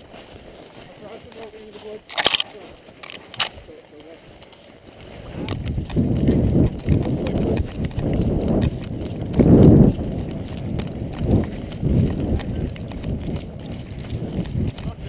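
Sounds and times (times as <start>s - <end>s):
footsteps through leaf litter: 0.0s - 5.4s
clothing and gear rustling: 0.0s - 15.0s.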